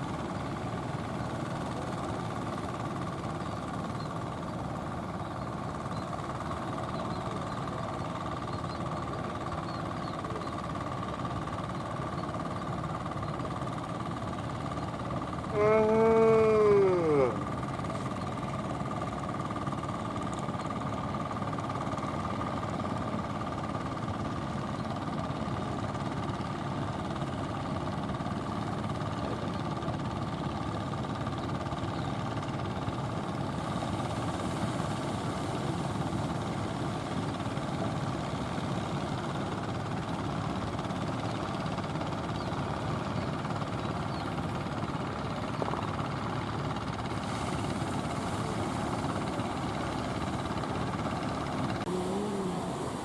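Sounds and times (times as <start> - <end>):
engine rumbling: 0.0 - 23.8, 31.4 - 53.0
faint steady hum: 12.9 - 19.6, 46.7 - 53.0.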